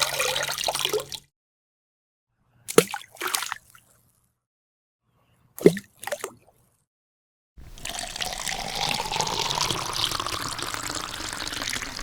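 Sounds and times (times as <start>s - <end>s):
water pouring into container: 7.6s - 12.0s.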